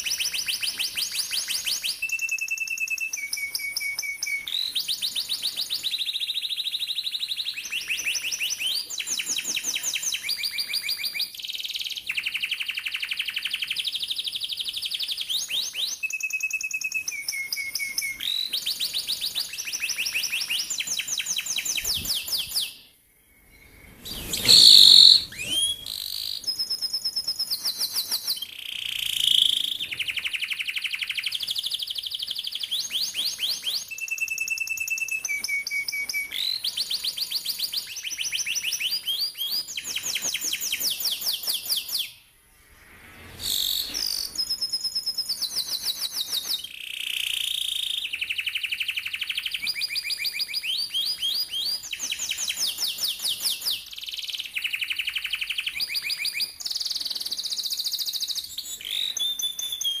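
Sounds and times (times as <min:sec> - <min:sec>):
canary singing trills: 0:00.0 - 0:42.1.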